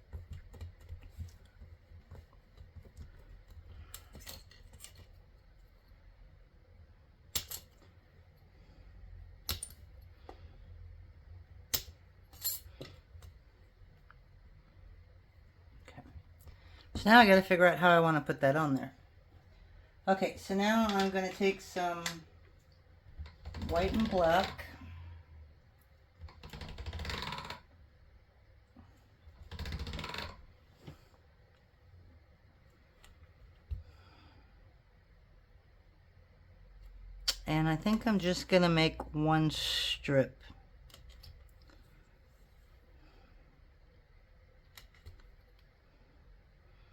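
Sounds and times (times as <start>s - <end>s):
clicking and rattling of clay blocks: 0.0s - 5.7s.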